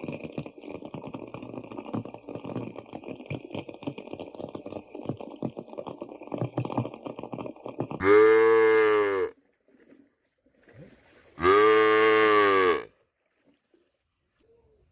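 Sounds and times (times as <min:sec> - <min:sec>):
crackling bubbling noise: 0:00.0 - 0:09.4
cow mooing: 0:08.0 - 0:09.3, 0:11.4 - 0:12.9.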